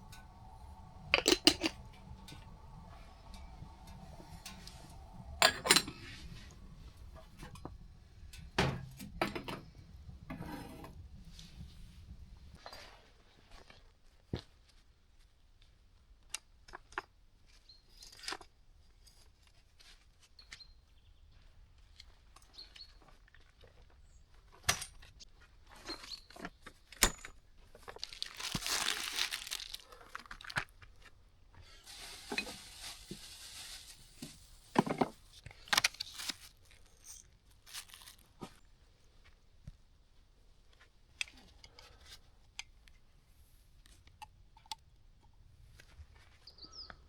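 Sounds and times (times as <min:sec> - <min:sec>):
rustling: 0:27.8 - 0:39.4.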